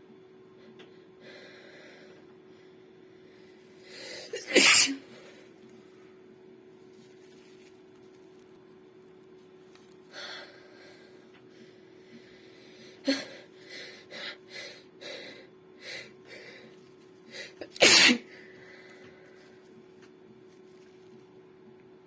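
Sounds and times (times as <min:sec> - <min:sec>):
woman sneezing: 0:04.4 - 0:05.1, 0:17.6 - 0:18.3.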